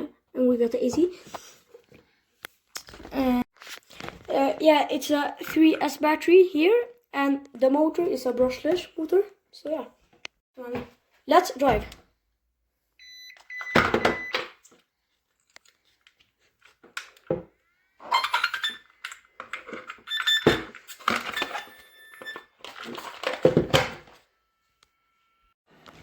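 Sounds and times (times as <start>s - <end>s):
short electronic beeps: 13.0s - 14.4s.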